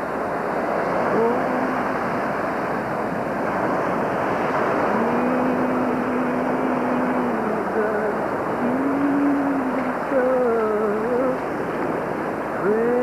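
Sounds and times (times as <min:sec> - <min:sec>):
ocean surf washing: 0:00.0 - 0:13.0
wind on microphone: 0:00.0 - 0:13.0
person singing: 0:01.0 - 0:02.2, 0:04.8 - 0:11.5, 0:12.6 - 0:13.0.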